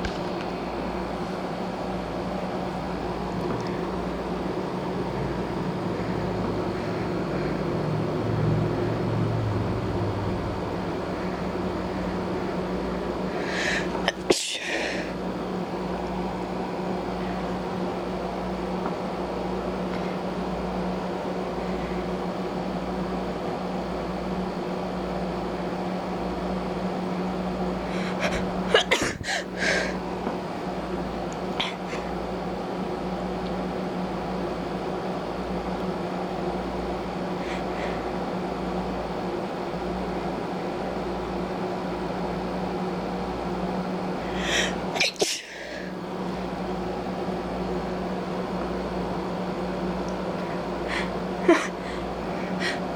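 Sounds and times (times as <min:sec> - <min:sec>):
background hum: 0:00.0 - 0:52.9
person sneezing: 0:13.5 - 0:15.1, 0:28.0 - 0:30.0, 0:31.6 - 0:32.1, 0:44.4 - 0:45.8, 0:50.9 - 0:52.9.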